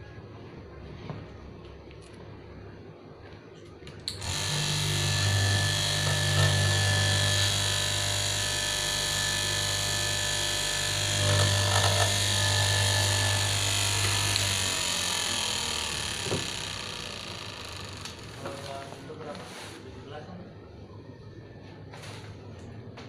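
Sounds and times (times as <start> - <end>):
cutting machine motor humming: 4.2 - 18.8.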